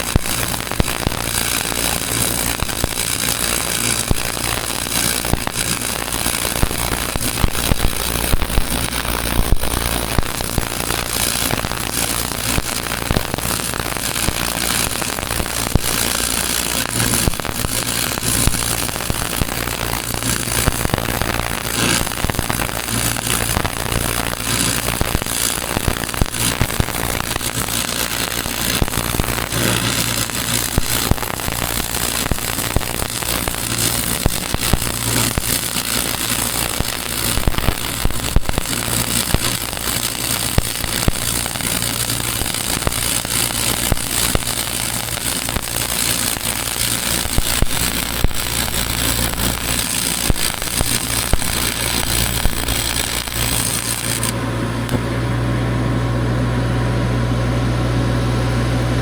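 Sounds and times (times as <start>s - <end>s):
electric arc welding crackle: 0.0s - 55.4s
steady low hum: 46.6s - 59.0s.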